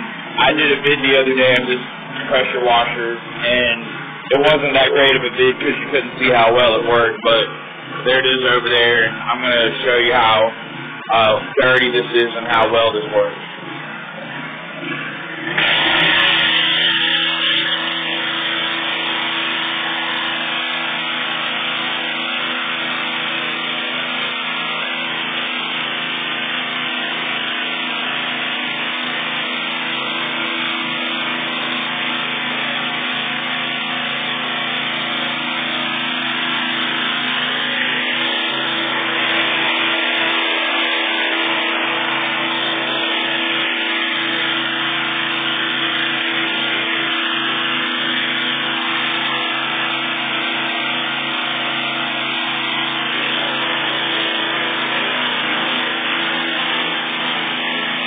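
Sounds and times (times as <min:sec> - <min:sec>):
pressure washer motor humming: 0:00.0 - 0:58.0
high-pressure water spray hissing: 0:15.6 - 0:58.0.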